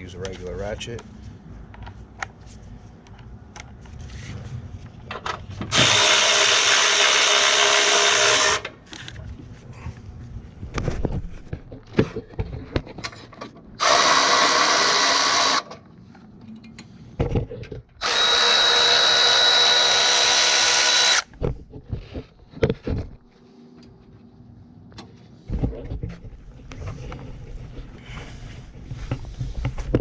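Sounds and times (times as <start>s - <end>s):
cordless ratchet running: 18.0s - 21.3s.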